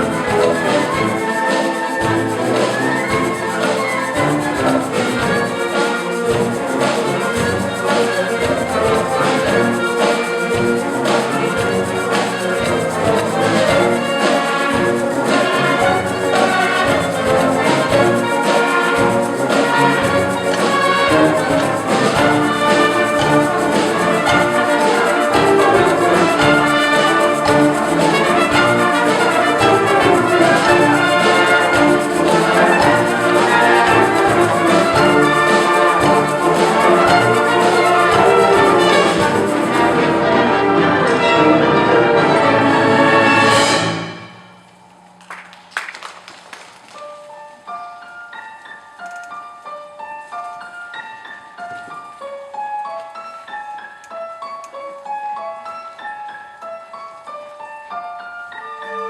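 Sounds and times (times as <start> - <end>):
orchestral brass music with beat: 0.0 - 44.3.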